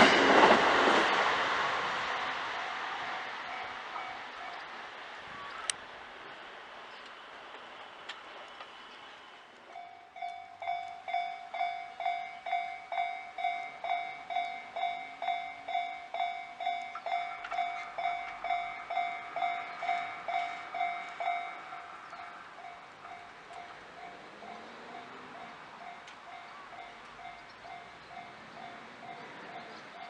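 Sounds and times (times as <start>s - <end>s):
level-crossing warning bell: 3.1s - 4.7s, 9.7s - 30.0s.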